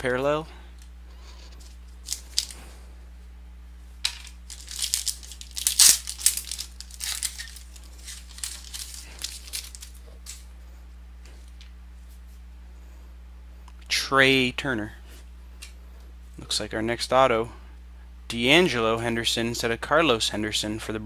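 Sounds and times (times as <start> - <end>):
low electrical hum: 0.0 - 21.0
foil wrapper crinkling and tearing: 2.0 - 2.6, 4.3 - 10.4.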